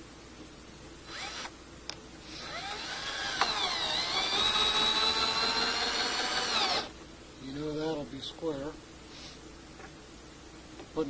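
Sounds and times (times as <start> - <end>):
cordless drill whining: 1.1 - 1.5, 2.3 - 6.9.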